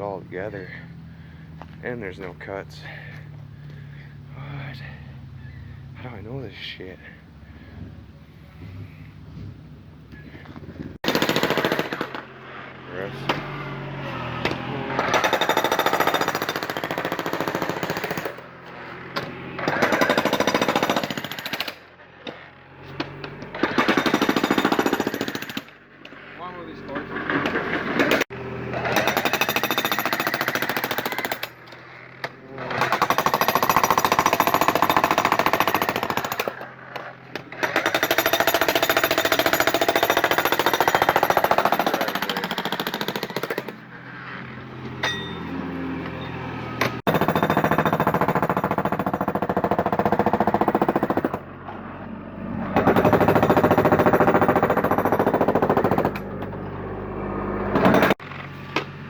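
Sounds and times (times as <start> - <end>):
jackhammer breaking concrete: 11.0 - 12.3, 15.0 - 18.4, 19.6 - 21.8, 23.5 - 25.8, 27.3 - 31.8, 32.6 - 43.8, 47.0 - 51.4, 52.8 - 56.4, 57.7 - 58.2.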